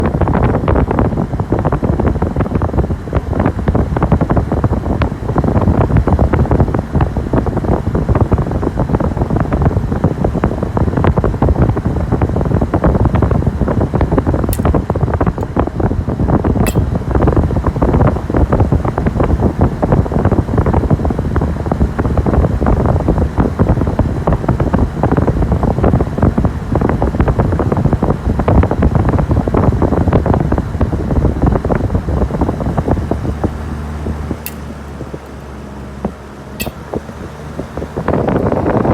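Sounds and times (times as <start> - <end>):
fridge compressor rushing hum: 0.0 - 38.9
overload switch clicks: 14.5 - 14.8, 16.6 - 16.9, 34.4 - 34.7, 36.6 - 36.8.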